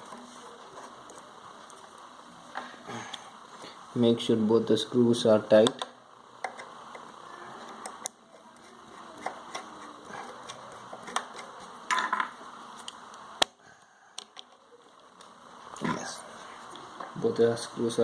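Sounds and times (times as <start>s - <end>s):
screwdriver clicking and scraping: 7.8s - 11.6s.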